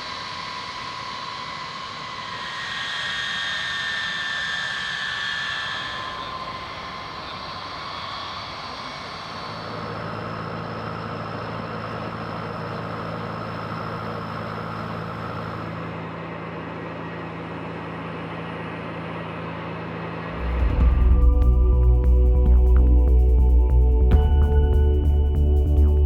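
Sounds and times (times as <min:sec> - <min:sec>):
low hum: 0:00.0 - 0:26.0.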